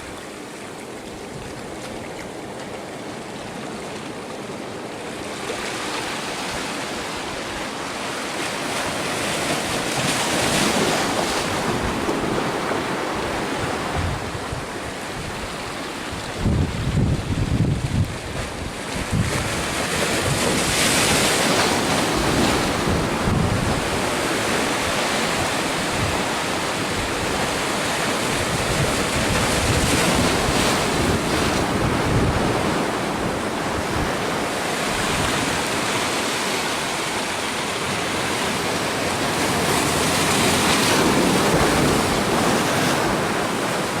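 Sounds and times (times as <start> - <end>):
storm waves breaking on shore: 0.0 - 44.0
wind buffeting microphone: 9.8 - 36.0.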